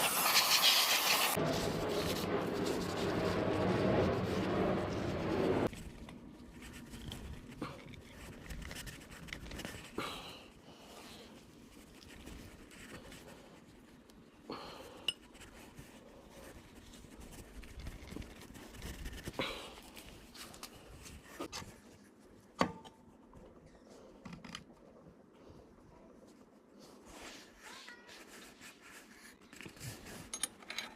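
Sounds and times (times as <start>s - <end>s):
metal parts scraping and clinking: 30.2s - 30.9s.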